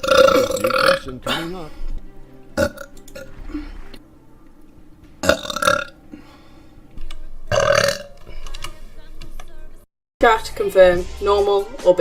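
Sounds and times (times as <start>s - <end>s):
woman burping: 0.0s - 1.4s, 2.6s - 3.7s, 5.2s - 6.0s, 7.5s - 8.1s.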